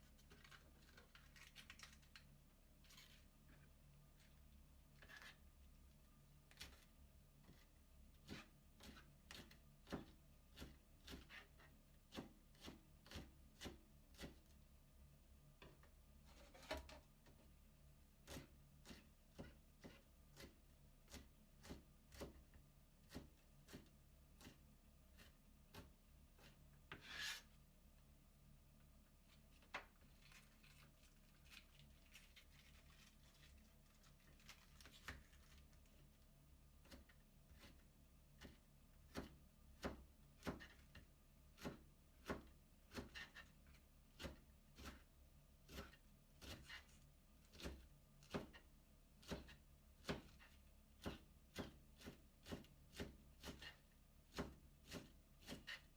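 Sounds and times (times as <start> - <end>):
knife cutting cabbage on board: 6.5 - 14.5, 18.2 - 27.6, 36.8 - 37.8, 38.4 - 40.9, 41.6 - 45.1, 45.7 - 48.6, 49.2 - 55.9.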